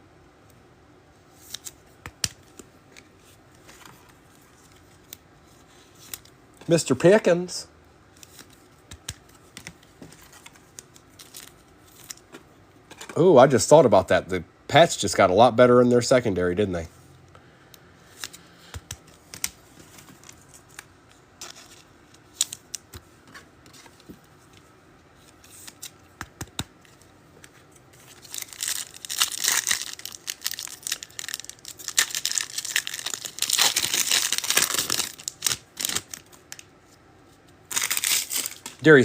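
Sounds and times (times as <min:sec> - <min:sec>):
foil wrapper tearing and crinkling: 0:28.0 - 0:36.7, 0:37.7 - 0:38.8.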